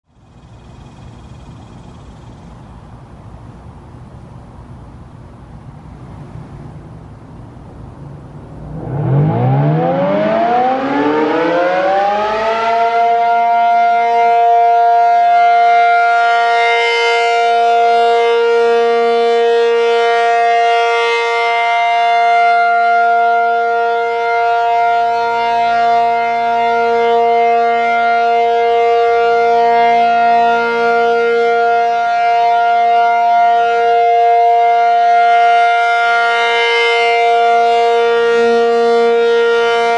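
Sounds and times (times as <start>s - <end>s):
faint background noise: 0.1s - 10.0s
warning siren rising tone: 8.3s - 39.9s.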